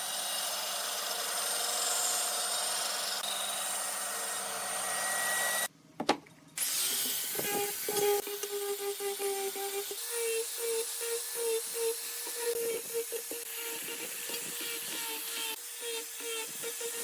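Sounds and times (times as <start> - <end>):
power tool working wood: 0.0 - 5.7, 6.7 - 17.0.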